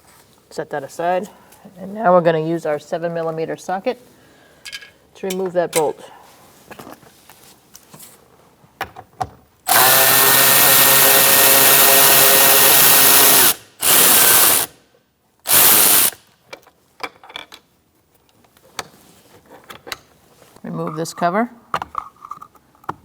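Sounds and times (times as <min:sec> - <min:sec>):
power drill spinning out bolt: 0:09.7 - 0:14.8, 0:15.5 - 0:16.3.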